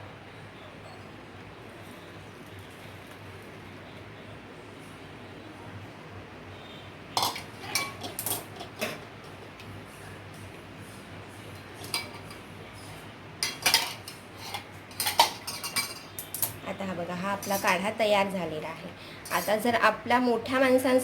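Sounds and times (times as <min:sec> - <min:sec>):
kitchen utensils clinking: 0:07.2 - 0:09.1, 0:11.7 - 0:16.6, 0:17.2 - 0:18.0, 0:19.2 - 0:19.8.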